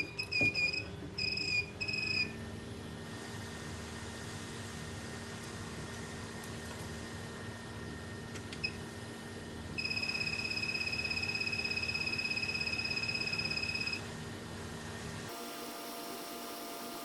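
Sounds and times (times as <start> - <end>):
workbench hum: 0.0 - 14.1, 14.7 - 17.0
high fluttering electronic beep: 9.8 - 14.0.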